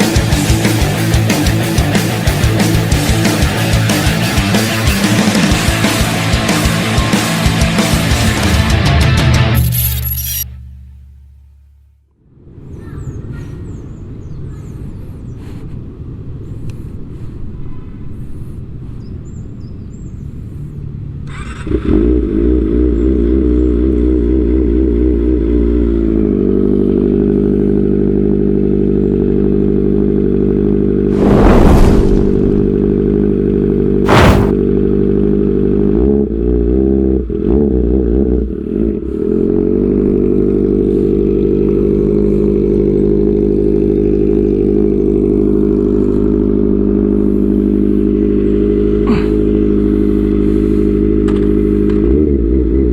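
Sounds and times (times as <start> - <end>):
motorcycle engine revving: 31.1 - 34.6, 36.0 - 52.9
sharp loud exhaust bursts: 34.1 - 34.6
motorcycle engine idling: 39.4 - 52.4.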